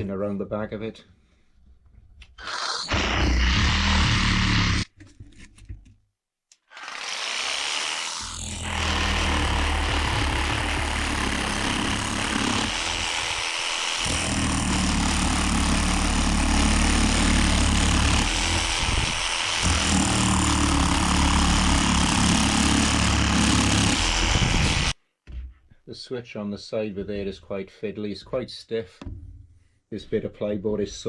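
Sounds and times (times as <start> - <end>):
jigsaw blade buzzing: 2.4 - 4.9, 6.7 - 25.0
jigsaw motor hum: 6.7 - 25.0.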